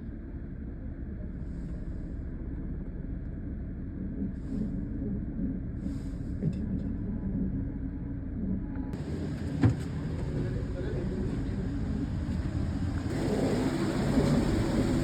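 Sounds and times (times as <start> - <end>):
vehicle engine low rumble: 0.0 - 15.0
faint high whine: 13.1 - 15.0.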